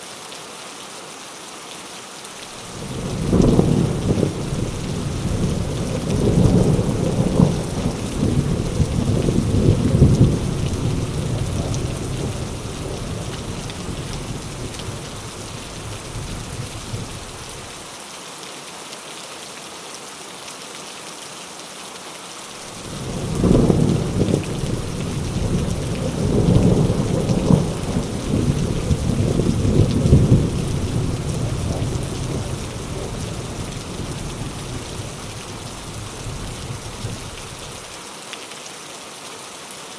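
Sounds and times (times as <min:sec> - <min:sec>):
heavy rain: 0:00.0 - 0:39.9
thunder rolling: 0:02.6 - 0:17.7, 0:22.8 - 0:37.8.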